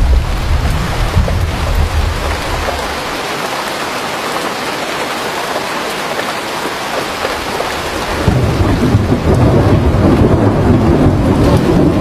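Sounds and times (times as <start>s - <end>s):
low thunder rumble: 0.0s - 3.1s, 7.8s - 12.0s
heavy rain pattering: 0.0s - 12.0s.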